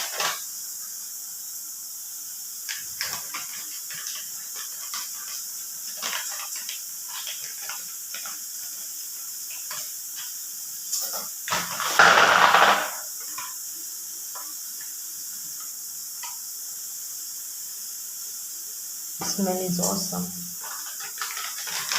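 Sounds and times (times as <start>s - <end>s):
packaging crinkling: 0.0s - 0.5s, 2.7s - 10.3s, 11.0s - 13.1s, 20.6s - 21.9s
steady hiss: 0.0s - 21.9s.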